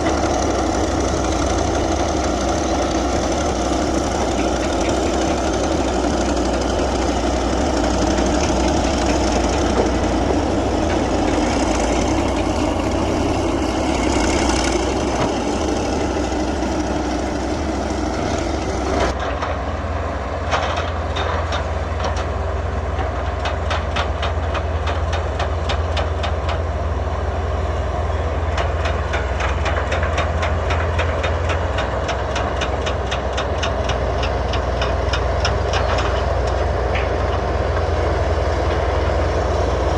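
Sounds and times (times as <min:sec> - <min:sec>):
steel tracks clanking: 0:00.0 - 0:19.6, 0:27.8 - 0:39.9
bulldozer diesel engine droning: 0:00.0 - 0:39.9.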